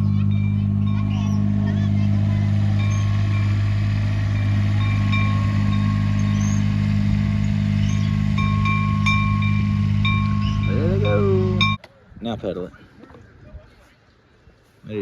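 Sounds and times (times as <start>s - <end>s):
low machine hum: 0.0s - 11.8s
short high ringing tones: 4.3s - 6.8s, 7.8s - 11.8s.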